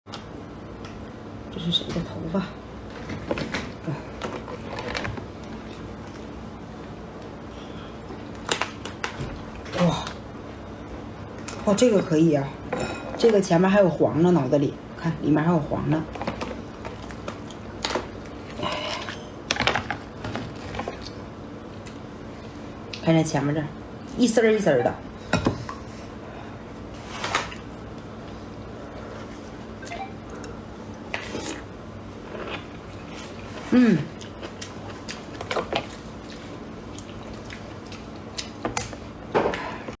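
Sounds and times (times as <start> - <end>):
wet squishing eating sounds: 30.3 - 38.7.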